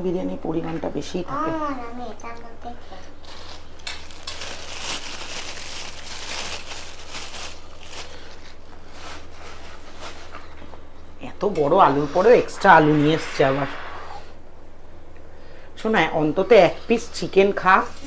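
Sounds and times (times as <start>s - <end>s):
food packaging crinkling: 3.2s - 10.5s.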